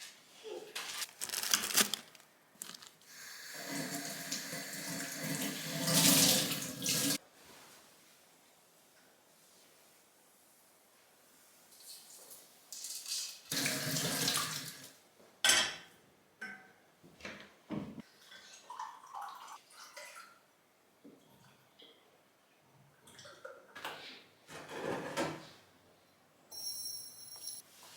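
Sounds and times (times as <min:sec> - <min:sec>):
tap water running into sink: 0:03.5 - 0:07.2, 0:13.3 - 0:14.9
kitchenware knocking and clinking: 0:15.4 - 0:16.8.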